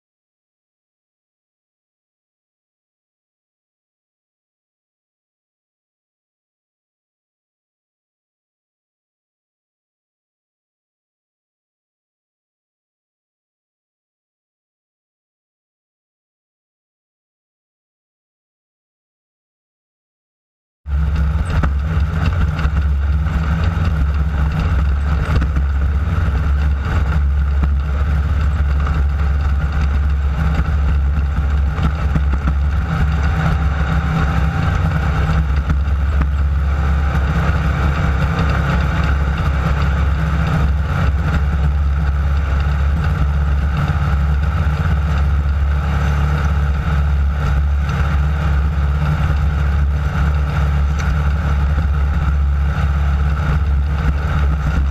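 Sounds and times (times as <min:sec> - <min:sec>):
buggy engine running hard: 0:20.9 - 0:54.9.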